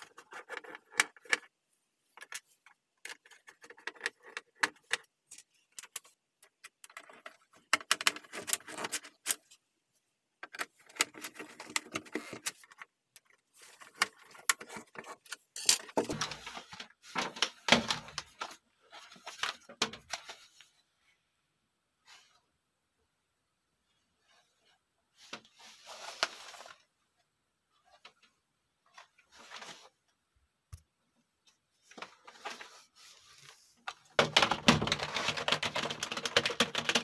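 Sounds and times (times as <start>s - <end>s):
plastic keyboard parts clicking: 2.2s - 9.4s, 10.4s - 16.6s, 17.2s - 18.5s, 34.2s - 37.0s.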